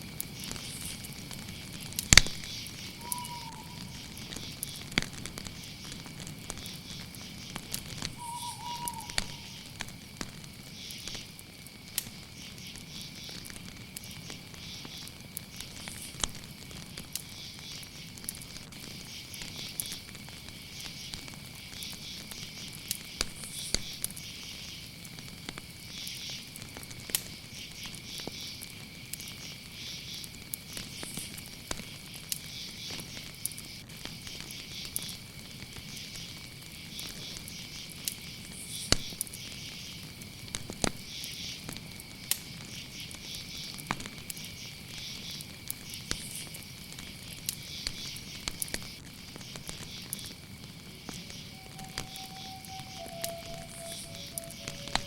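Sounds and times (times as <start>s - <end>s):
fire pops: 0.0s - 8.3s, 9.0s - 29.7s, 30.3s - 55.0s
campfire crackling: 0.0s - 55.0s
crickets trilling: 0.0s - 55.0s
short chirps: 8.2s - 9.6s, 51.4s - 55.0s.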